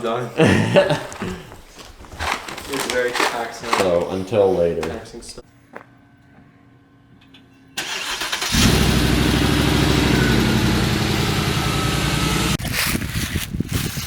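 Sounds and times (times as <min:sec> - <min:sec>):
car starter cranking: 0:07.8 - 0:12.0
car engine running: 0:08.5 - 0:12.6.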